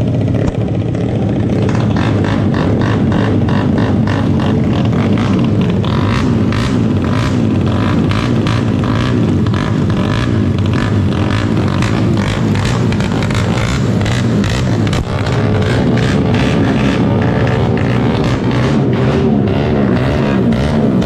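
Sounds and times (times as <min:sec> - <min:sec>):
motorcycle engine exhaust: 0:00.0 - 0:21.0.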